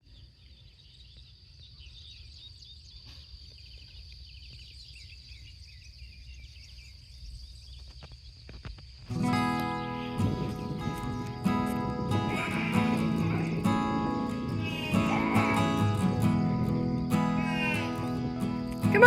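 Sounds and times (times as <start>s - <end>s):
small birds chirping and singing: 0.0s - 19.0s
high-pitched insect drone: 9.1s - 19.0s.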